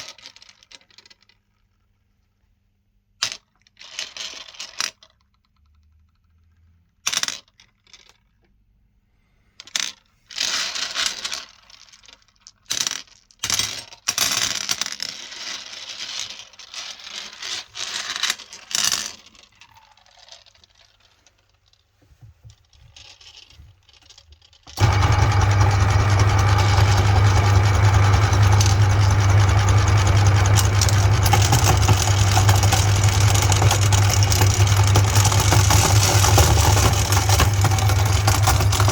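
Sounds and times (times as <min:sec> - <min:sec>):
hard candy clattering: 0:24.8 - 0:38.9
meat grinder motor humming: 0:24.8 - 0:38.9.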